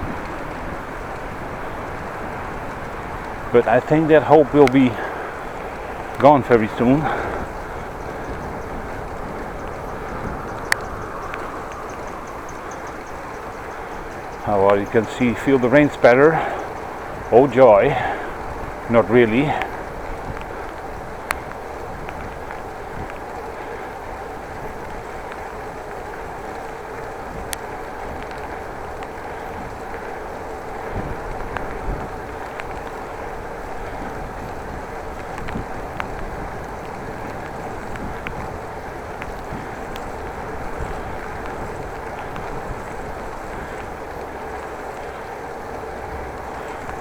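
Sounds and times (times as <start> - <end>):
wind rushing: 0.0 - 23.1
bicycle tyre noise: 0.0 - 47.0
light ticks: 0.1 - 17.6, 18.2 - 47.0.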